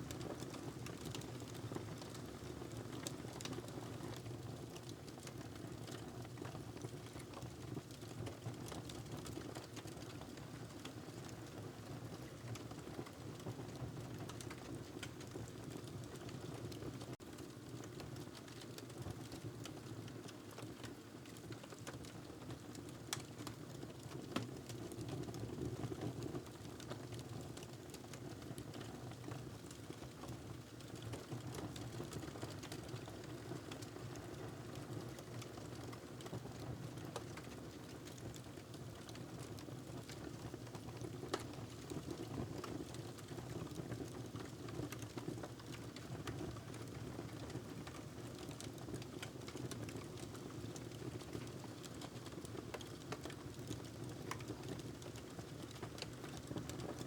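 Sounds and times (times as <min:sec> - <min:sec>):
wood fire crackling: 0:30.8 - 0:36.4, 0:40.0 - 0:41.5, 0:42.6 - 0:56.9.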